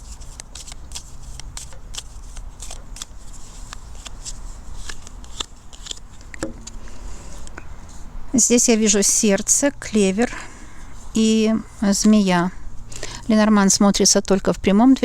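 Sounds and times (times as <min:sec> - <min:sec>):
cards shuffling: 0:00.0 - 0:08.0.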